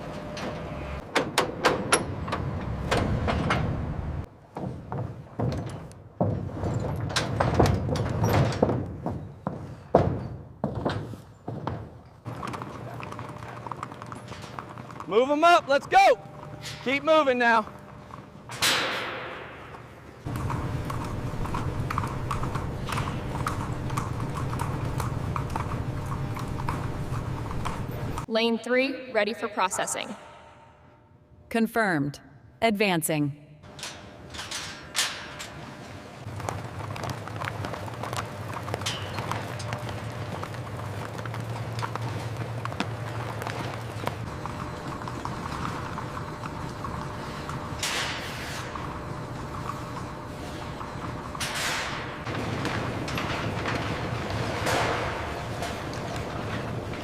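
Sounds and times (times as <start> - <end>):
metal gate sliding and banging: 0.0 - 4.3, 5.2 - 12.8, 33.6 - 36.3, 50.9 - 57.0
horse hooves clopping: 4.4 - 18.5, 19.6 - 28.3, 35.6 - 48.0, 48.6 - 57.0.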